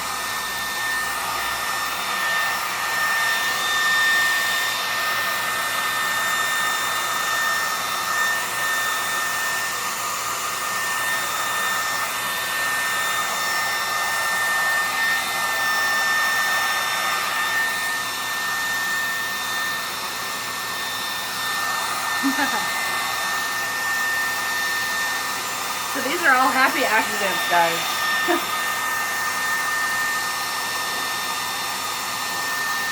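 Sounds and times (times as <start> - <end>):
hair dryer running: 0.0 - 32.9.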